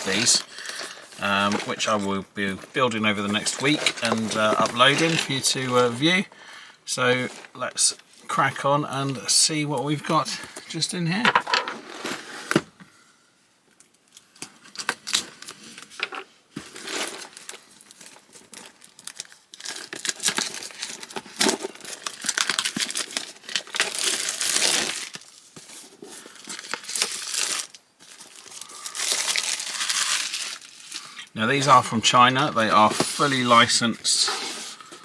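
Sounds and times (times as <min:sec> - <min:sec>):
packaging crinkling and rustling: 0:00.0 - 0:06.2, 0:14.1 - 0:35.0.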